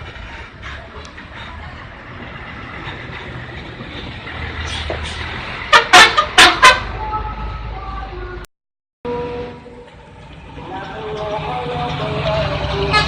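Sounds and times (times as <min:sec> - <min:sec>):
bus engine rumble: 0:00.0 - 0:08.5, 0:09.1 - 0:13.0
bus musical horn blasts: 0:05.6 - 0:07.5, 0:12.6 - 0:13.0.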